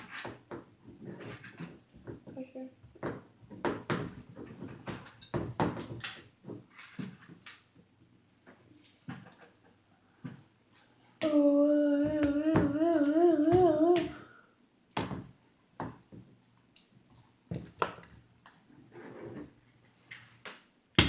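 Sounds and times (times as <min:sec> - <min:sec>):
voice holding a sung note: 0:11.2 - 0:14.3.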